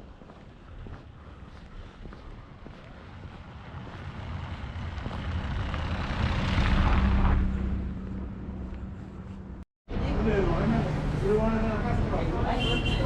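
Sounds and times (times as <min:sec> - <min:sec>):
vehicle passing by: 0:02.8 - 0:09.1.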